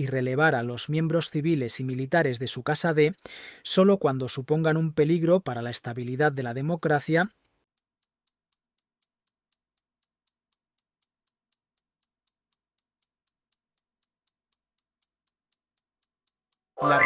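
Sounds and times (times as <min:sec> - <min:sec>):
high-pitched clock ticks: 0:07.3 - 0:17.0.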